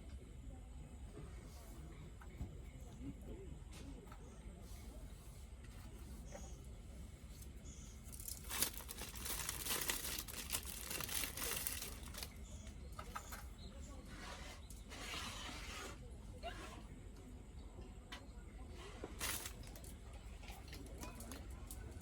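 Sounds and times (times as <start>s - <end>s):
rustling and crinkling: 7.2s - 15.7s, 18.9s - 22.0s.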